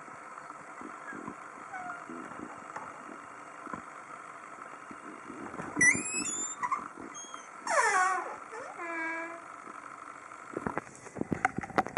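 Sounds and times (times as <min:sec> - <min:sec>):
door hinge creaking: 0:05.5 - 0:09.6
door hinge squeaking: 0:05.6 - 0:09.6.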